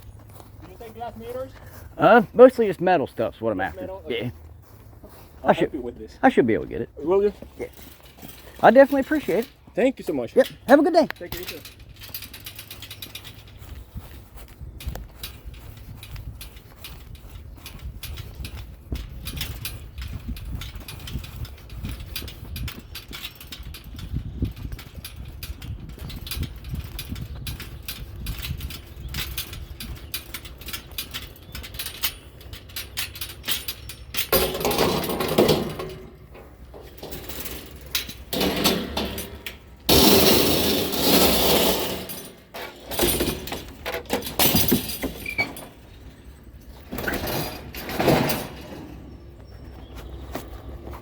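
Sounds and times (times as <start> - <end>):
scrap items clattering and scraping: 33.3 - 49.2.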